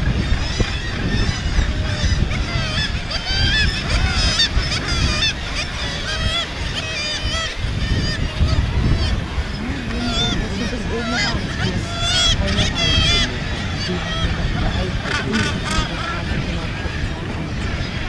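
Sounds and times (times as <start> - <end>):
gulls screeching: 0.0 - 18.0.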